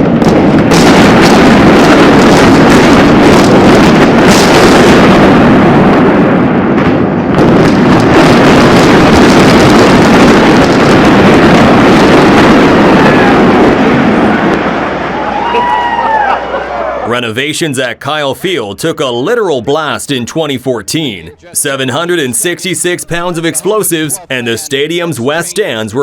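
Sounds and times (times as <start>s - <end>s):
demolition rumbling: 0.0s - 20.2s
sharp cracks: 6.8s - 15.2s.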